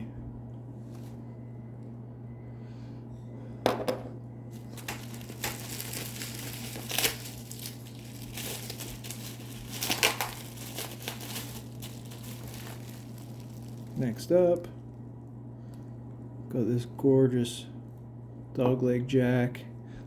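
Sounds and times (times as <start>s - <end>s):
packaging crumpling and rustling: 4.5s - 14.4s.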